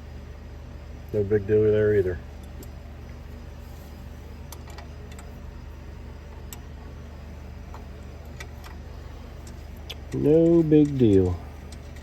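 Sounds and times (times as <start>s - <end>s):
steady low hum: 0.0s - 12.0s
metal parts clicking and tapping: 9.4s - 12.0s.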